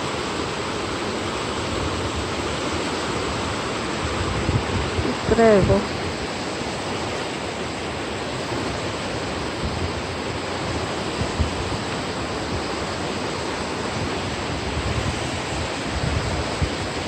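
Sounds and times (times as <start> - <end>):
river water flowing: 0.0 - 17.0
wind on microphone: 0.0 - 17.0.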